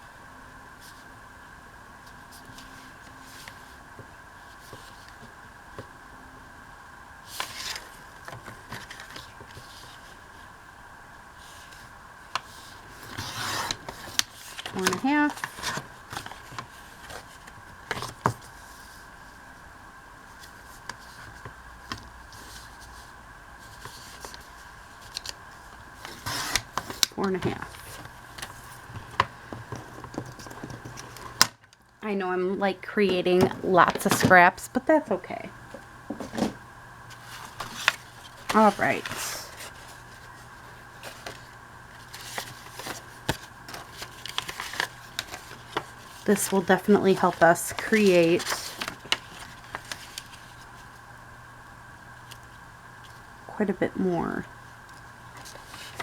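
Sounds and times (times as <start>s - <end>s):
faint background hum: 0.0s - 56.0s
paper tapping and rustling: 26.0s - 31.8s, 37.2s - 40.4s, 41.0s - 50.6s, 55.4s - 56.0s.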